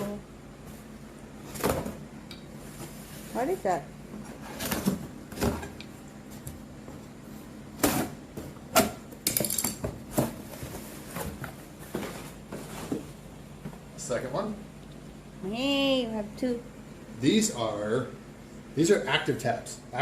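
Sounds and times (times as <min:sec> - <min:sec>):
items knocking and tapping: 0:07.9 - 0:13.8.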